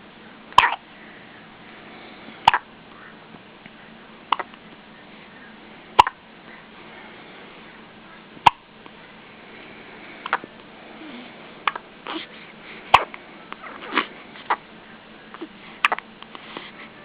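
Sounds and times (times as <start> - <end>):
baby hiccuping: 0.6 - 0.8, 2.4 - 2.7, 4.3 - 4.6, 6.0 - 6.2, 8.4 - 8.6, 11.6 - 12.3, 12.9 - 14.7.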